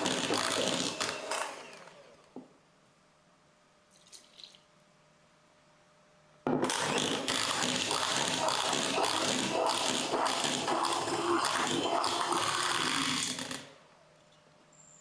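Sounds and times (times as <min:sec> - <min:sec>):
electric mixer running: 0:00.0 - 0:02.2, 0:06.7 - 0:13.7.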